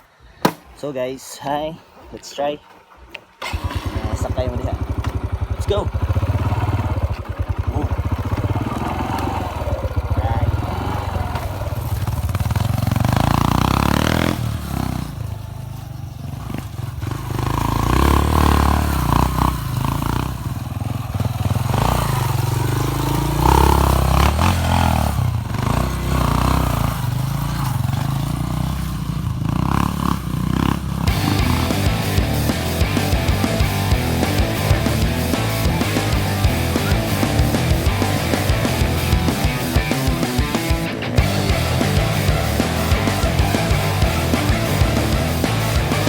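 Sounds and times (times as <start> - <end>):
motorcycle engine under way: 2.6 - 46.0.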